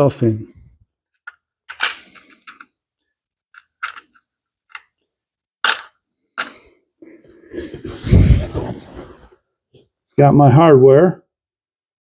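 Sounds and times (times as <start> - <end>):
metal parts clicking and knocking: 3.5 - 5.0, 5.6 - 6.5.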